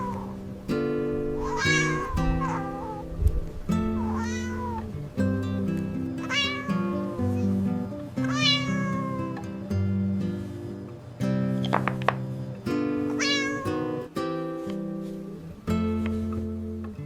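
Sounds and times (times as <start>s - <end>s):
cat meowing: 0.0s - 0.3s, 1.4s - 3.0s, 4.0s - 4.8s, 6.2s - 7.5s, 8.2s - 9.4s, 13.2s - 14.0s
gentle background music: 0.0s - 17.0s.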